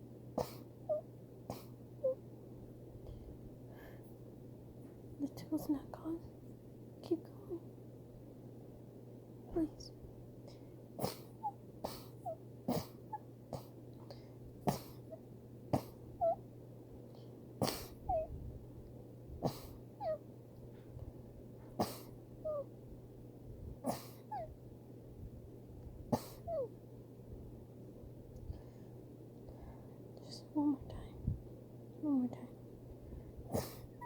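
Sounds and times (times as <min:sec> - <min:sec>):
person sneezing: 0:17.6 - 0:18.0, 0:33.5 - 0:33.9.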